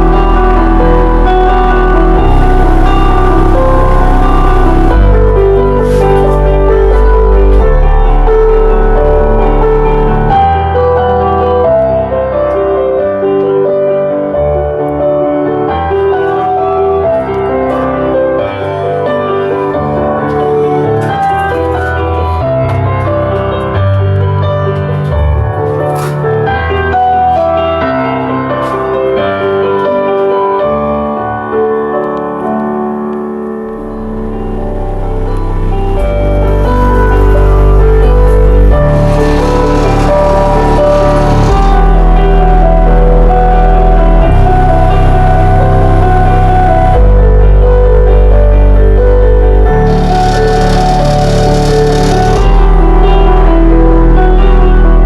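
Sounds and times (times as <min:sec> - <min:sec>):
deep bass: 0:00.0 - 0:12.0, 0:33.7 - 0:55.0
electronic music with keyboard melody: 0:00.0 - 0:55.0.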